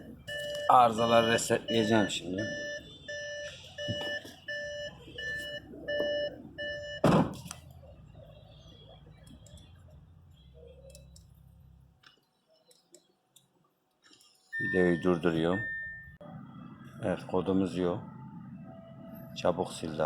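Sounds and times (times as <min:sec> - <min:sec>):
electronic warning beeps: 0:00.2 - 0:07.1, 0:14.5 - 0:16.2
engine idling low hum: 0:02.5 - 0:12.0, 0:16.0 - 0:20.0
loud thump: 0:07.0 - 0:07.5.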